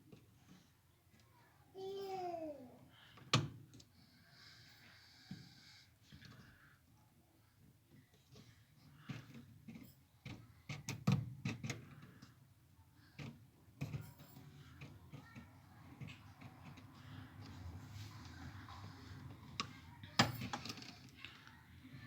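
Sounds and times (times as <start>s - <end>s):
hands clicking and knocking on parts: 8.3s - 12.4s, 13.2s - 17.6s.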